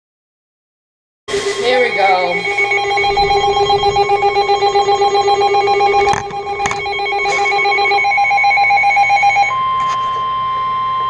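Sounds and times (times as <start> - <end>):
steady single-pitch alert tone: 1.3 - 11.0
weather radio alarm warbling: 1.3 - 11.0.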